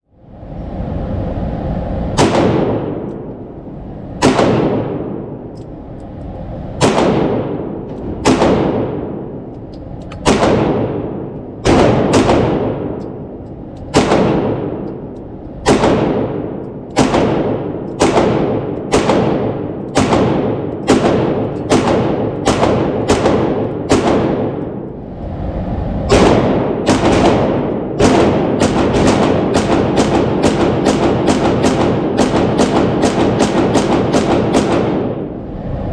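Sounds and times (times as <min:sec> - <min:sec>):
pistol shots with echo: 0:02.2 - 0:03.1, 0:04.2 - 0:05.4, 0:06.8 - 0:09.3, 0:10.2 - 0:13.0, 0:13.9 - 0:14.9, 0:15.6 - 0:24.7, 0:26.1 - 0:35.3.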